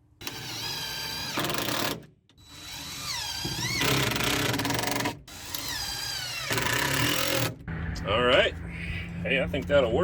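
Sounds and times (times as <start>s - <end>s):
power drill driving screws into wood: 0.2s - 7.6s.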